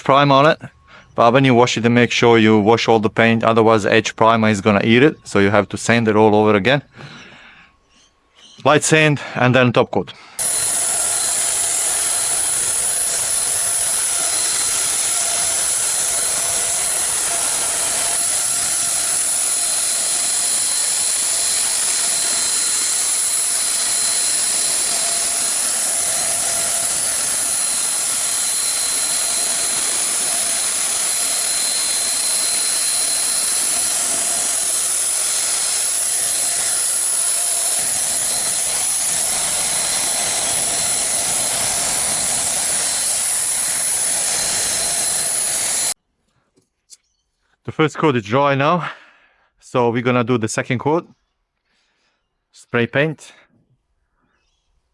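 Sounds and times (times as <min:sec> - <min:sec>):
faint steady whine: 0:10.3 - 0:46.0
paint sprayer hissing: 0:10.4 - 0:46.0.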